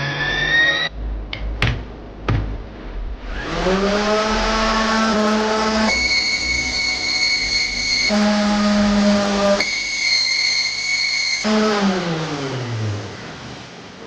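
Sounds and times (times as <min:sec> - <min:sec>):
power tool motor whining: 0:03.2 - 0:12.7.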